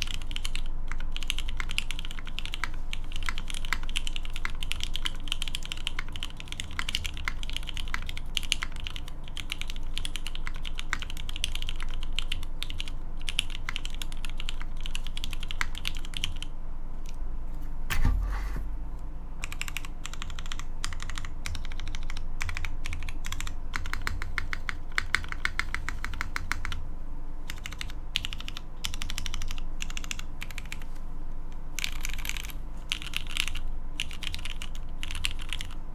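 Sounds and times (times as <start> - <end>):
mechanical keyboard typing: 0.0 - 16.5, 19.4 - 26.8, 27.5 - 30.8, 31.8 - 35.8
low thump: 17.9 - 18.9.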